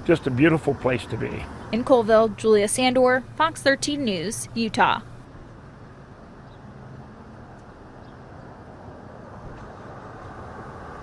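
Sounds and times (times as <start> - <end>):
low outdoor rumble: 0.0 - 6.7.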